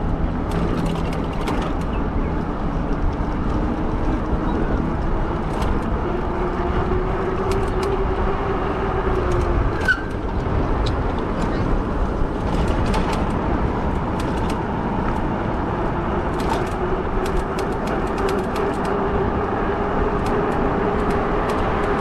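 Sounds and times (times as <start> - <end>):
bike road noise: 0.0 - 22.0
wind rush: 0.0 - 22.0.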